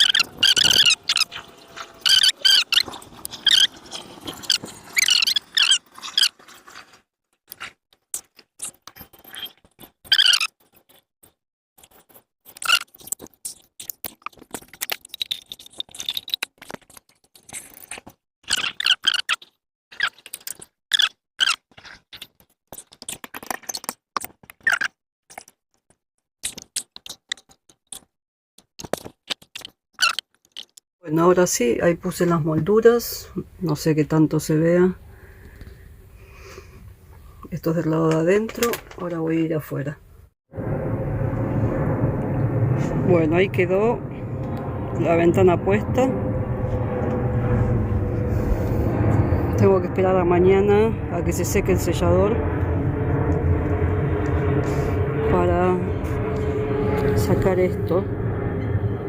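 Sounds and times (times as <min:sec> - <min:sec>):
high wavering squeaks: 0:00.0 - 0:06.4, 0:09.2 - 0:10.6, 0:18.5 - 0:19.4, 0:50.5 - 0:59.0
window trim squeaks and scrapes: 0:00.0 - 0:11.1, 0:11.9 - 0:14.4.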